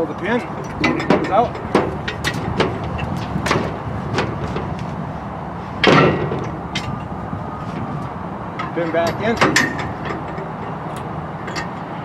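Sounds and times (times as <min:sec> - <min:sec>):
metal knocks and clanks: 0:00.0 - 0:04.7, 0:08.6 - 0:11.9
loud ringing metal clank: 0:09.6 - 0:11.9.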